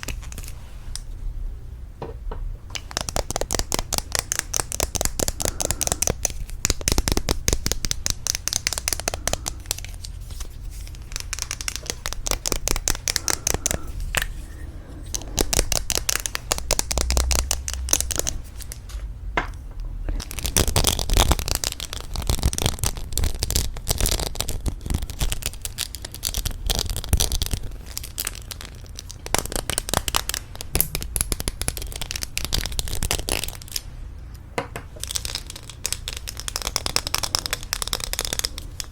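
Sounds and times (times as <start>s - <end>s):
tapping on lipstick tubes: 2.7s - 9.8s, 11.0s - 13.9s, 15.1s - 18.4s.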